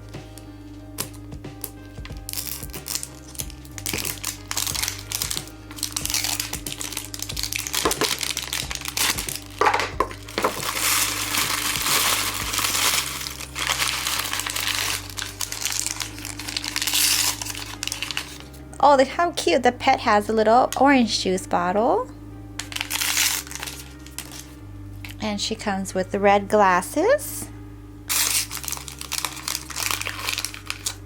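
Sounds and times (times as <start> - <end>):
plastic wrappers crinkling: 0.0 - 18.7, 22.6 - 25.2, 28.1 - 31.0
background music with bass line: 0.0 - 31.0.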